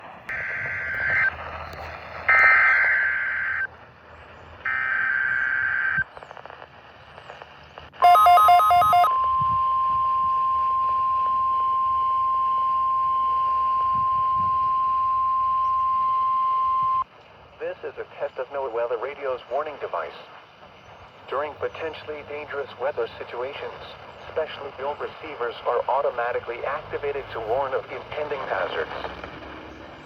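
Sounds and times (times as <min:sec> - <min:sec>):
screechy digital header tones: 0:00.3 - 0:01.3, 0:02.3 - 0:03.7, 0:04.7 - 0:06.0, 0:08.0 - 0:17.0
steady warning alarm tone: 0:00.3 - 0:01.4, 0:02.3 - 0:03.7, 0:04.7 - 0:06.0, 0:08.0 - 0:17.0
faint radio hiss: 0:00.3 - 0:09.1, 0:09.7 - 0:29.2
pulsing beep: 0:02.3 - 0:03.7, 0:08.0 - 0:17.0.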